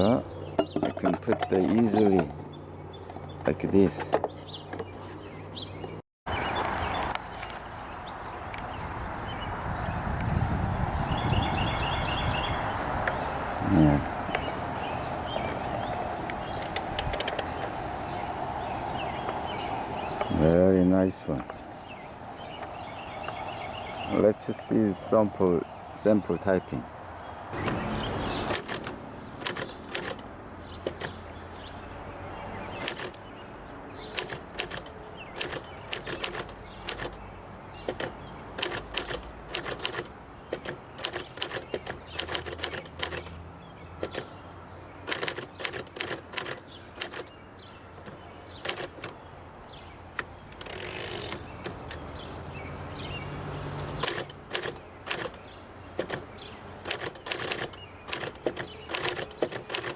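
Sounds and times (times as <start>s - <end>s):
manual typewriter typing: 16.6s - 17.5s, 28.4s - 31.2s, 32.6s - 33.2s, 34.0s - 37.2s, 37.8s - 43.4s, 44.0s - 44.3s, 45.0s - 47.4s, 48.0s - 49.2s, 50.1s - 52.0s, 53.7s - 59.9s
typewriter carriage sweep: 45.1s - 47.3s.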